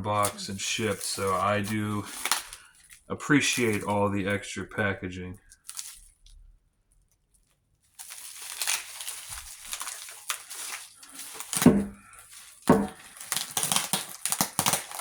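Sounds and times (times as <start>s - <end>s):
packing material crinkling: 0.0s - 15.0s
thuds: 11.6s - 12.0s.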